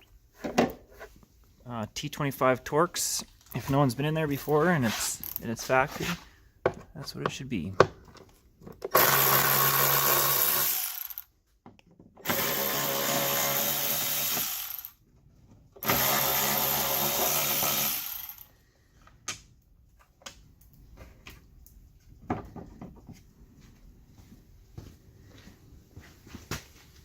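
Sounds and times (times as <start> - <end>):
power drill removing screws: 8.8 - 11.2, 12.2 - 14.9, 15.8 - 18.4.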